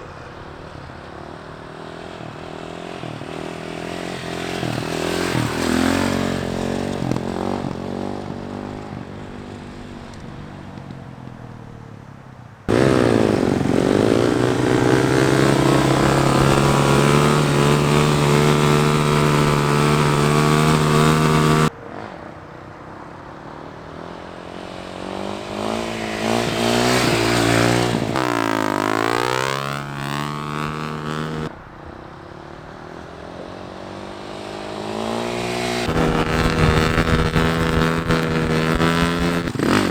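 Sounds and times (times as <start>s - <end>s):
dirt bike engines revving: 1.2s - 9.8s, 12.7s - 22.4s, 24.3s - 31.5s, 34.0s - 39.9s.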